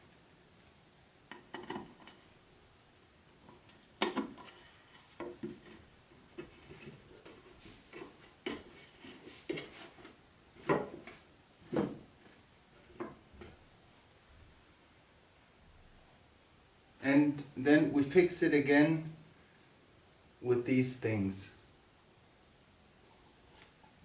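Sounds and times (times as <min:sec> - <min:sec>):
wooden parts knocking and clicking: 0:01.3 - 0:02.2.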